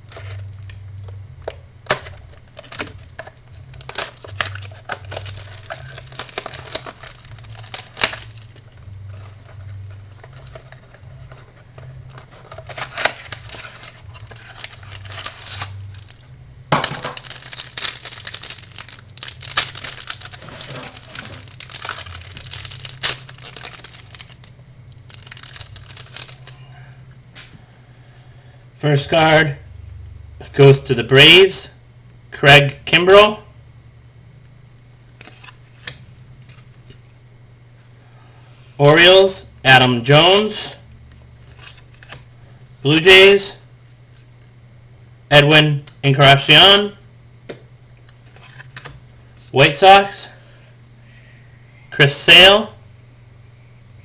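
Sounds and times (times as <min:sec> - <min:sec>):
wrappers tearing and crinkling: 0:01.8 - 0:26.7, 0:41.4 - 0:42.3.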